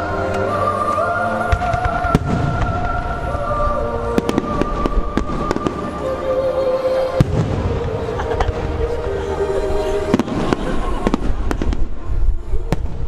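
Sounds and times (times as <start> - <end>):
music over loudspeakers: 0.0 - 13.0
fireworks bursting with bangs: 1.5 - 3.3, 7.2 - 8.9, 10.1 - 13.0
fireworks crackling: 1.5 - 6.2, 9.8 - 13.0.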